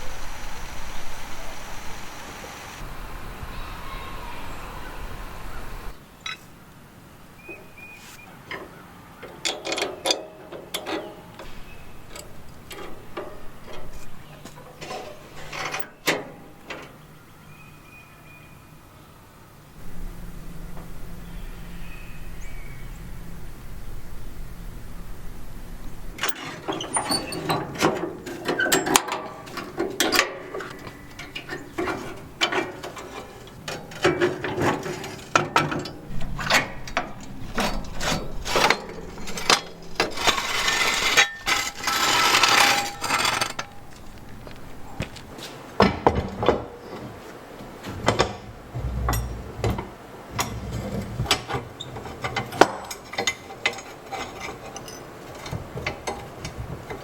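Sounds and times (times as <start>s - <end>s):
hand tools clinking on metal: 6.2s - 6.6s, 8.5s - 17.0s, 26.2s - 44.4s, 52.2s - 56.3s
steady rasping noise: 36.0s - 45.0s.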